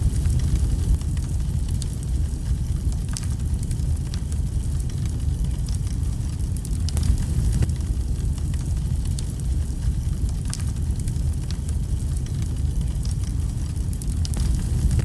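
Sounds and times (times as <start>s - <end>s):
fire rumbling: 0.0s - 15.0s
logs crackling and popping: 0.0s - 15.0s.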